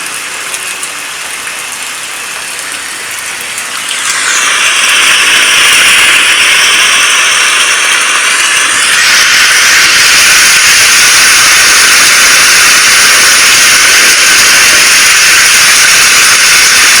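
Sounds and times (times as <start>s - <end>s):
rain falling: 0.0s - 11.5s.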